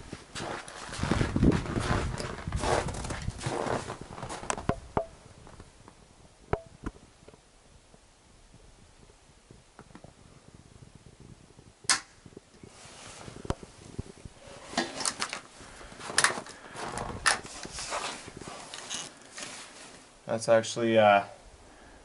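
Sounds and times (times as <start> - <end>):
rifle handling clicks and rattles: 14.8 - 15.5, 16.1 - 16.6, 17.2 - 17.6.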